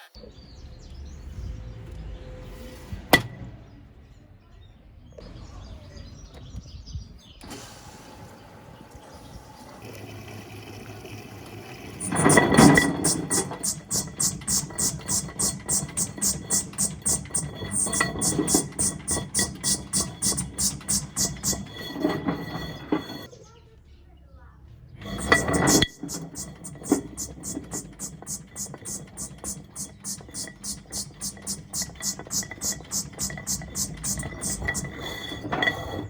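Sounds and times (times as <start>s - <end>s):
washing machine drum turning: 9.4s - 23.3s, 25.0s - 36.0s
stones clattering against drum: 12.0s - 23.3s, 25.0s - 36.0s.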